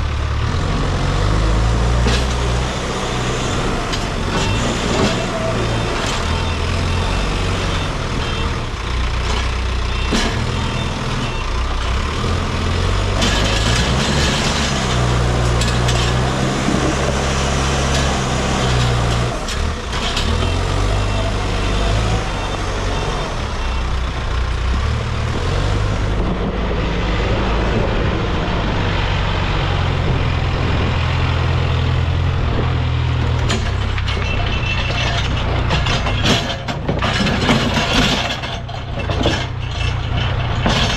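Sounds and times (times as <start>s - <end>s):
diesel engine working under load: 0.0s - 40.9s.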